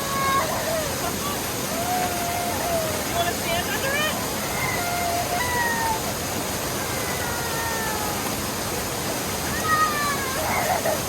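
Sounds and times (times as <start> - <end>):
waterfall rushing: 0.0 - 11.0
toddler crying: 4.4 - 6.2, 6.8 - 8.3, 9.5 - 11.0.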